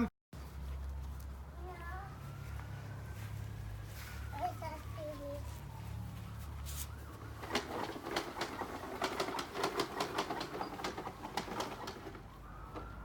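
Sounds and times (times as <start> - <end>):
toy lawn mower clicking and rattling: 7.4 - 12.9.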